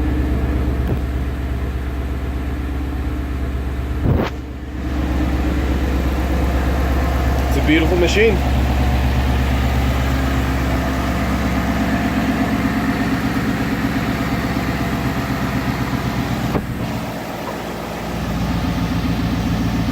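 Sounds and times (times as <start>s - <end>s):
car engine idling: 0.0s - 19.9s.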